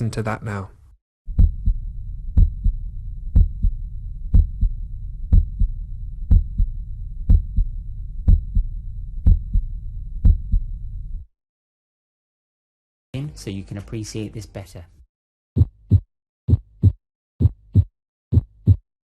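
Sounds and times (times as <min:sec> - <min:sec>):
heartbeat lub-dub: 0:01.3 - 0:10.8, 0:15.6 - 0:18.8
low hum: 0:01.3 - 0:11.3.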